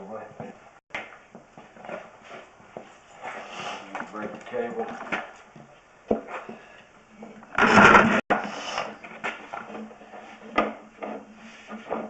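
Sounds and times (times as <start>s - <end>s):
cable reel rattling scrape: 7.6s - 8.2s.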